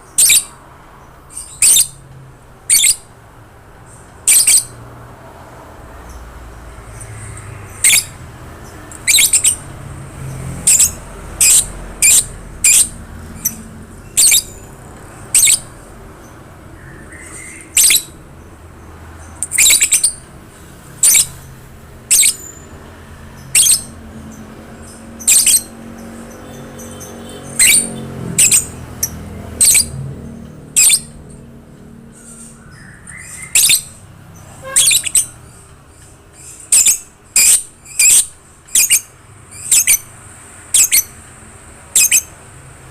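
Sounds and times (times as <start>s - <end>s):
lovebird squawking: 0.2s - 0.6s, 1.3s - 2.0s, 2.7s - 3.1s, 4.3s - 4.8s, 7.7s - 8.2s, 9.0s - 9.6s, 10.6s - 14.6s, 15.3s - 15.8s, 16.8s - 18.2s, 19.4s - 20.2s, 21.0s - 21.4s, 22.1s - 22.6s, 23.4s - 24.0s, 25.2s - 25.8s, 26.8s - 30.0s, 30.8s - 31.2s, 32.2s - 34.0s, 34.6s - 35.4s, 36.4s - 40.1s, 40.7s - 41.2s, 42.0s - 42.4s.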